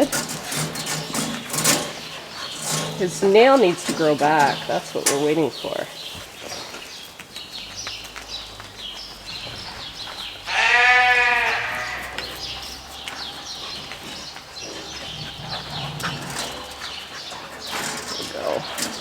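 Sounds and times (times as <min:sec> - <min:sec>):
sheep bleating: 0:10.5 - 0:12.2
light knocks and rustling: 0:12.1 - 0:19.0.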